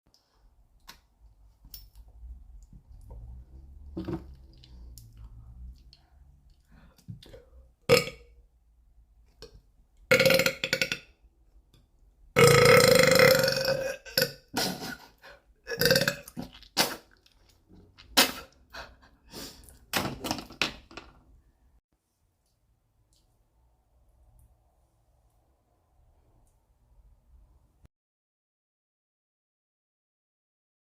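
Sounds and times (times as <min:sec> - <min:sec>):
woman burping: 0:10.1 - 0:11.0, 0:12.4 - 0:15.0, 0:15.6 - 0:16.5.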